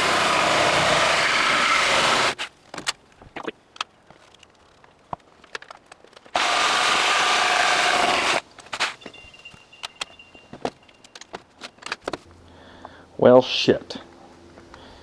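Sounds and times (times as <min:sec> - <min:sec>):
reciprocating saw cutting log: 0:00.0 - 0:02.4, 0:06.3 - 0:08.4.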